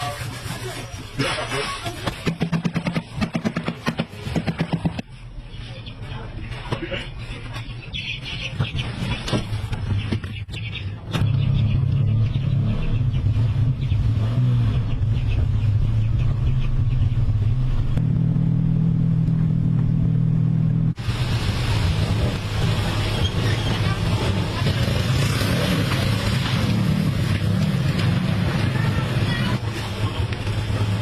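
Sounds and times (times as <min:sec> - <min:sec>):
car engine running: 0:11.2 - 0:31.0.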